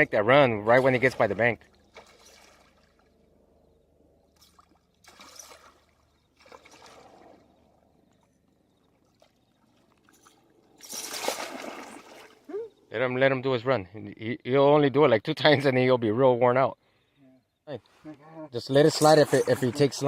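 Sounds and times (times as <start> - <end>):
water splashing and sloshing: 0.6 - 12.5, 18.8 - 20.0.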